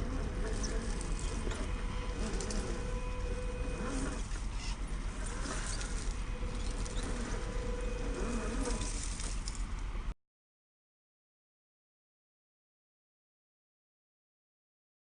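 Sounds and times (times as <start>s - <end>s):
small electric motor whining: 0.0s - 9.9s.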